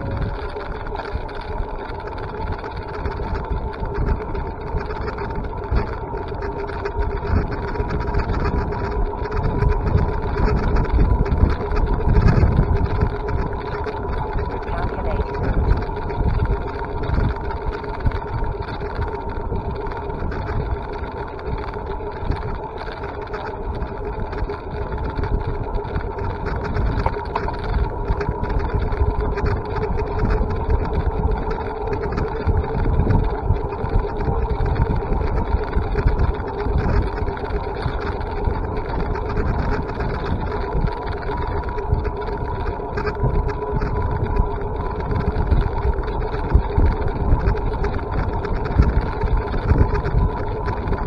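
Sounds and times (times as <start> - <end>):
electric bike motor whining: 0.0 - 51.0
low rumbling noise: 0.0 - 51.0.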